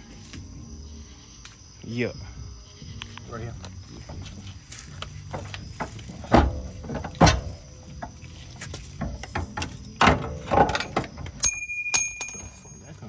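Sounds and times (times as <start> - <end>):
hand tools and metal parts clinking: 3.6 - 13.0.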